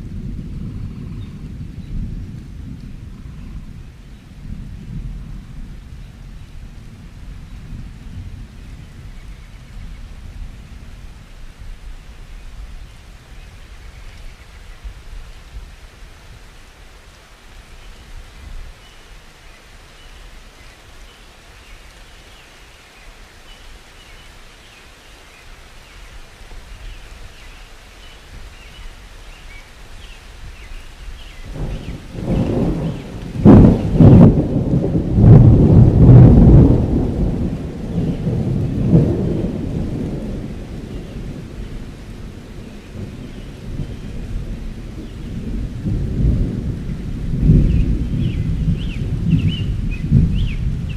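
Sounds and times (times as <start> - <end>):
thunder rumbling and clapping: 0.0 - 11.1, 31.5 - 50.9
rain hissing: 0.0 - 50.9.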